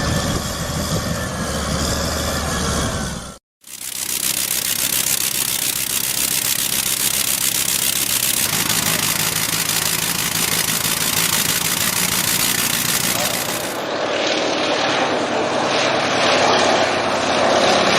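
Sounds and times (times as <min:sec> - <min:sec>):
vehicle engine running: 0:03.6 - 0:13.9.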